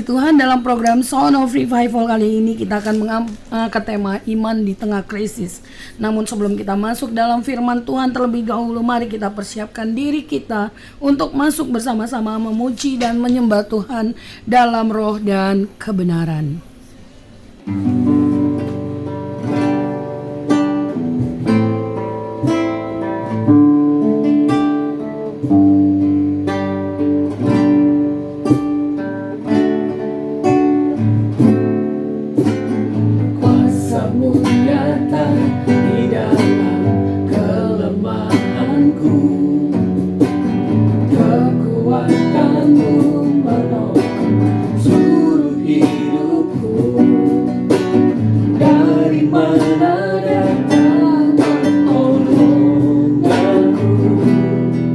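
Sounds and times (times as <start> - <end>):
strummed acoustic guitar: 17.3 - 54.9
person singing: 33.0 - 54.9.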